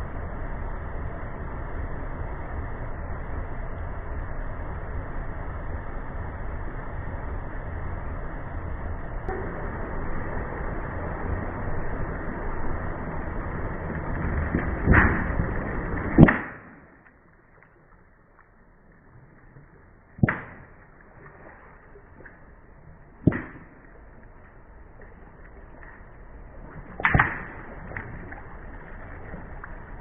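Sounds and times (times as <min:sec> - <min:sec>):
car and tyre noise: 0:09.3 - 0:18.0
objects cracking under car wheels: 0:13.5 - 0:19.5.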